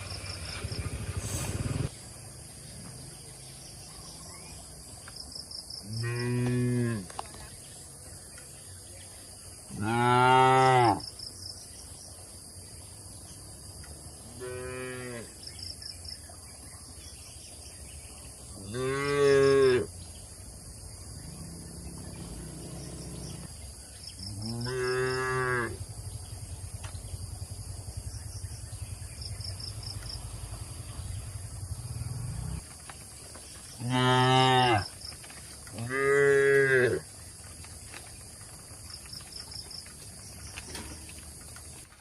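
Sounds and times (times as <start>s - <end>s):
cattle mooing: 24.4s - 25.8s.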